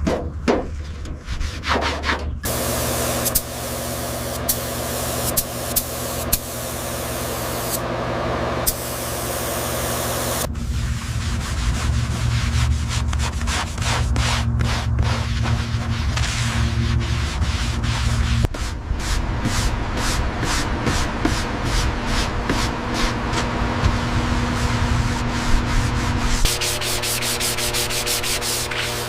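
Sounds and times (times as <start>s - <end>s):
hand sanding strokes: 1.2s - 7.8s, 8.7s - 29.0s
loud steady hiss: 2.5s - 10.5s.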